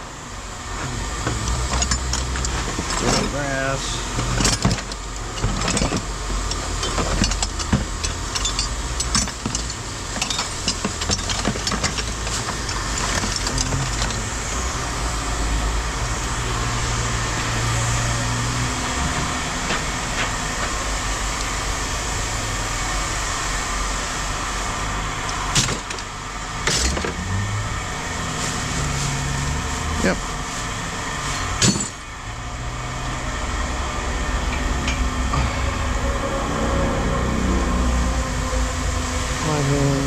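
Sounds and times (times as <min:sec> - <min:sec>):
machine running steadily: 0:00.0 - 0:40.0
scrap metal clanking: 0:00.8 - 0:14.7, 0:25.3 - 0:27.2, 0:31.2 - 0:32.1.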